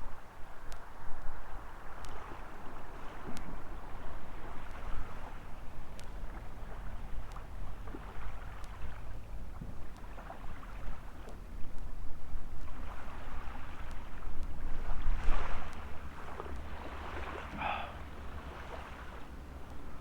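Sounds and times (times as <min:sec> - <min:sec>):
wind rumbling on microphone: 0:00.0 - 0:20.0
small waves washing on sand: 0:00.2 - 0:20.0
faint sharp ticks: 0:00.6 - 0:12.8, 0:13.7 - 0:16.8.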